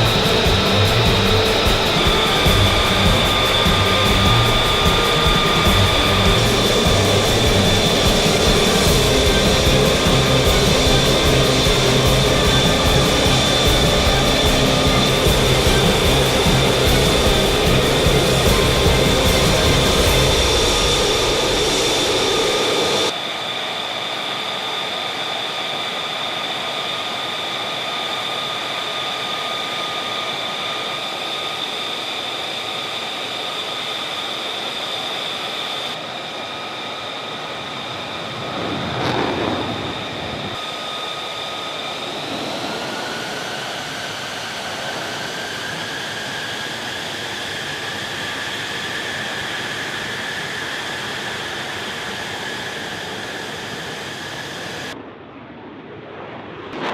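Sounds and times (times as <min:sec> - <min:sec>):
rushing noise: 0:00.0 - 0:23.2, 0:37.8 - 0:44.2
jet engine whining: 0:00.0 - 0:56.9
loud whoosh: 0:38.2 - 0:40.7.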